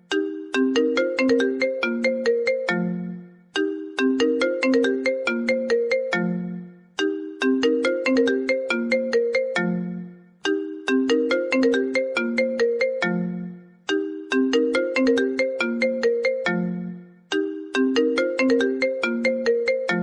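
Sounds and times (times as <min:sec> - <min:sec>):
phone ringtone melody: 0:00.0 - 0:20.0.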